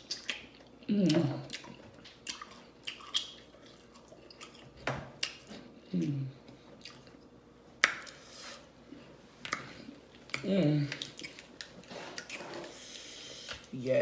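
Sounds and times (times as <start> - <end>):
lip smacks: 0.0 - 4.6
wet chewing mouth noises: 0.0 - 6.2, 6.8 - 8.2
person humming mm: 0.9 - 1.5, 5.8 - 6.4.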